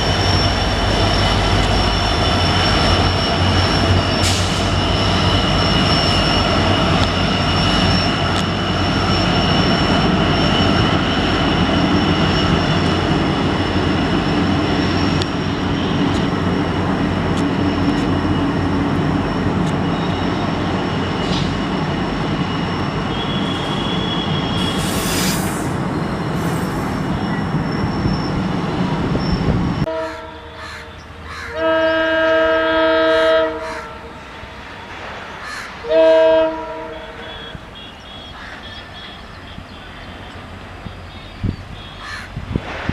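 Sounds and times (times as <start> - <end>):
wheels squealing: 0.0 - 29.6
train rolling rumble: 0.0 - 42.9
locomotive horn blast: 23.1 - 25.1, 29.9 - 30.6, 31.5 - 34.1, 35.8 - 40.4.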